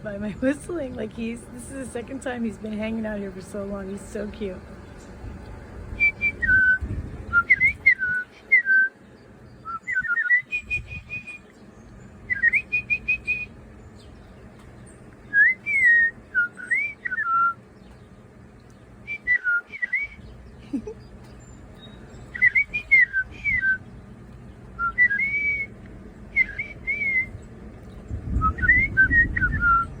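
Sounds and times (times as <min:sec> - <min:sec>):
woman whistling bird call: 0:06.0 - 0:09.0, 0:09.6 - 0:11.4, 0:12.3 - 0:13.5, 0:15.3 - 0:17.6, 0:19.1 - 0:20.2, 0:22.4 - 0:23.8, 0:24.8 - 0:25.7, 0:26.4 - 0:27.4, 0:28.4 - 0:30.0.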